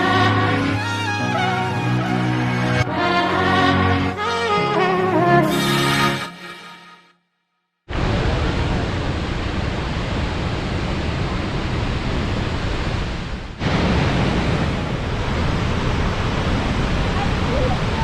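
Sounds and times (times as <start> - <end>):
waterfall rushing water: 8.0 - 18.0.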